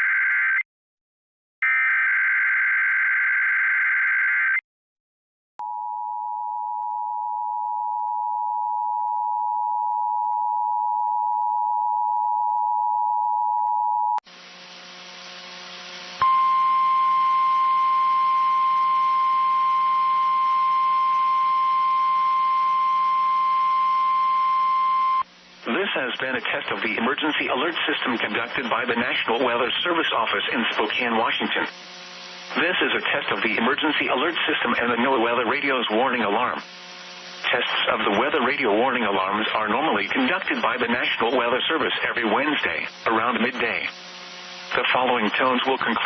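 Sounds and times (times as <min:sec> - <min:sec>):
radio hiss and hum: 0:14.3 - 0:16.3, 0:25.1 - 0:46.0
steady warning alarm tone: 0:16.2 - 0:25.2.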